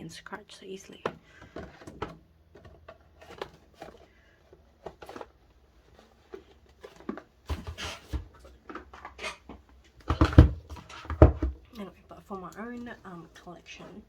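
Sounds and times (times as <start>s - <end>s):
plastic sleeves crinkling: 0.9s - 10.0s.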